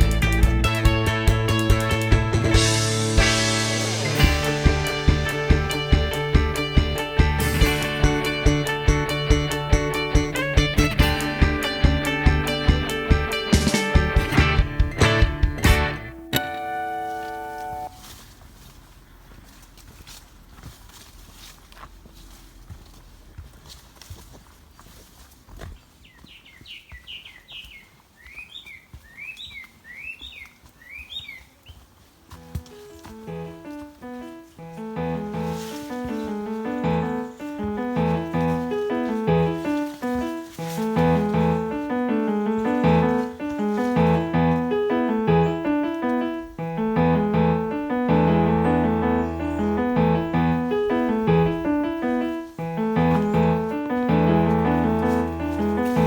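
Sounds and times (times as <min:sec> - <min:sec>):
piano music: 0:00.0 - 0:18.0, 0:32.3 - 0:56.0
songbird singing: 0:25.6 - 0:56.0.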